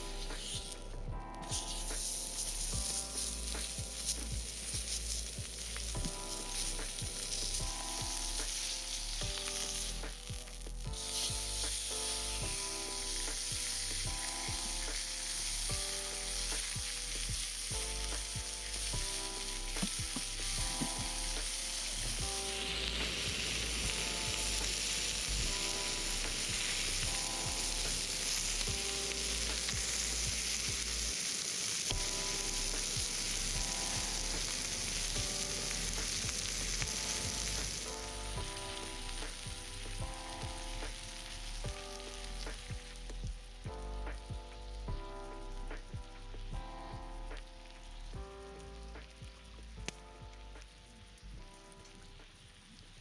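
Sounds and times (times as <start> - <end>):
background music with beat: 0.0 - 53.0
meat sizzling on griddle: 1.5 - 43.0.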